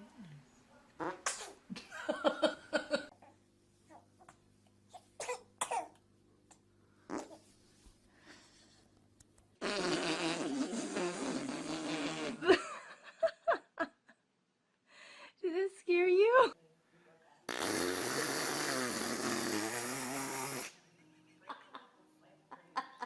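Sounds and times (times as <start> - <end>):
long rippling fart: 9.6 - 12.5, 17.5 - 20.7.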